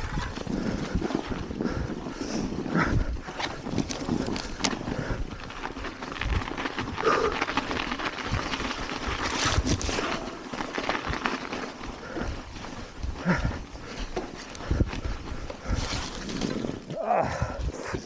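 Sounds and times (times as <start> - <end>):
bike rattles and knocks: 0.0 - 18.0.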